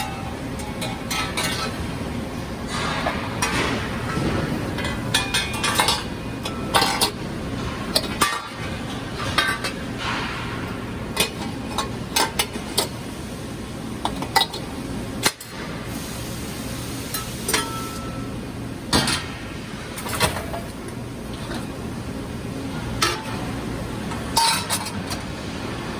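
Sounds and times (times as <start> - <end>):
steady machinery noise: 0.0 - 25.9.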